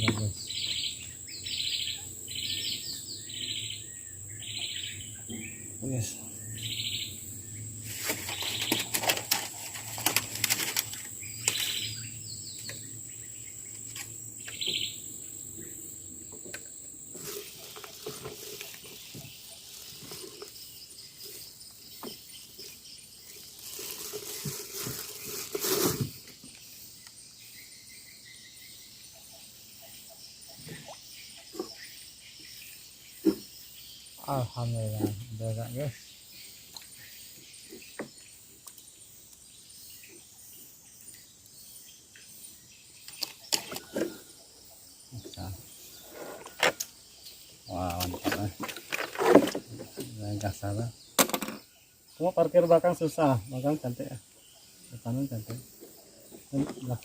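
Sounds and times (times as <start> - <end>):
birds chirping: 0.0 - 57.0
high insect drone: 0.0 - 57.0
knocks and rustles of fishing gear: 7.9 - 11.8, 16.4 - 20.6, 48.0 - 50.1.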